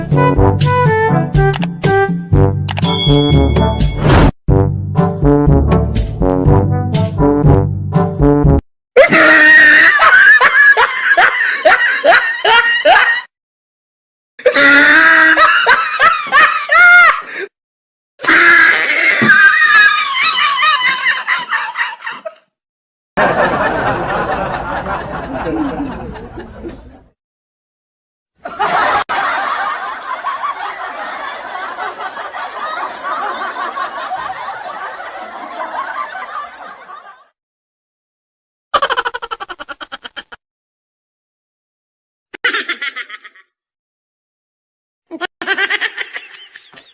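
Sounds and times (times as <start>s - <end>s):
sharp click: 1.5s - 1.8s, 2.7s - 3.0s
cartoon laughing: 9.0s - 13.3s, 38.8s - 40.4s, 42.4s - 43.6s, 45.1s - 46.9s.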